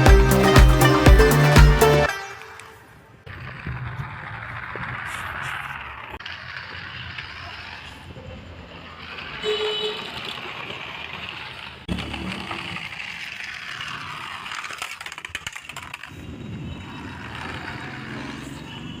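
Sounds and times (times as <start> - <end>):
toy car motor whirring: 3.3 - 9.4, 10.2 - 18.7.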